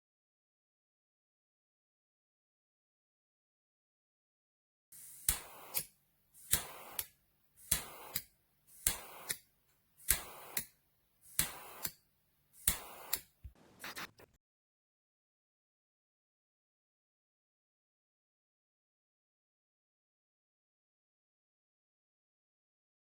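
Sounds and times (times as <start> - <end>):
brief hiss of gas: 5.0 - 12.0, 12.6 - 13.4
lighter clicking: 5.0 - 12.0, 12.6 - 13.4.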